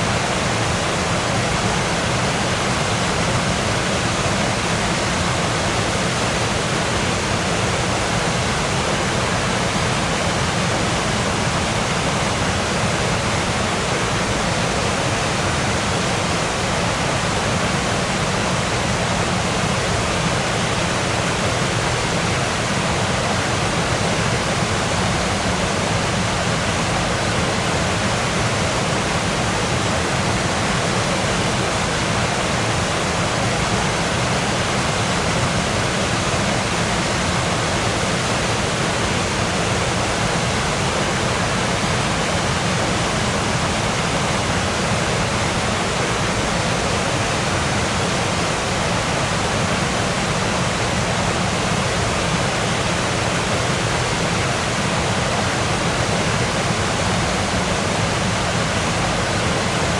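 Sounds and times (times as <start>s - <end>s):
waterfall roaring: 0.0s - 59.9s.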